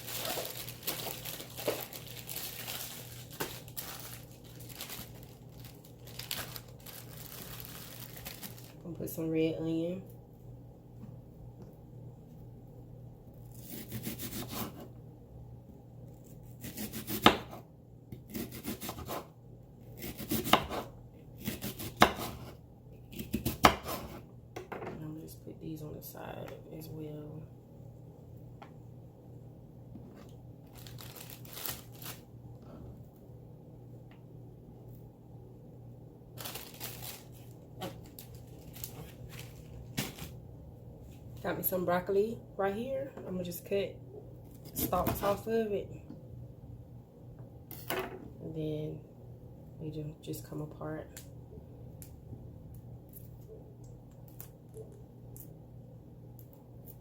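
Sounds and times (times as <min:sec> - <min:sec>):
vegetables rustling when handled: 0:00.0 - 0:09.1, 0:30.6 - 0:32.2, 0:36.4 - 0:40.4
steady low hum: 0:00.0 - 0:57.0
knife chopping on cutting board: 0:16.6 - 0:17.6, 0:18.2 - 0:19.2, 0:20.0 - 0:22.5, 0:23.1 - 0:24.2.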